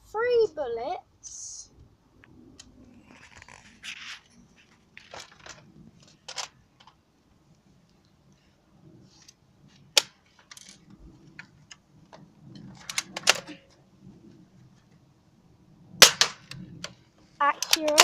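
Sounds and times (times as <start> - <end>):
bb gun clicks and rattles: 5.0 - 7.0, 12.6 - 13.6, 16.0 - 18.0
sharp loud snap: 16.0 - 16.6.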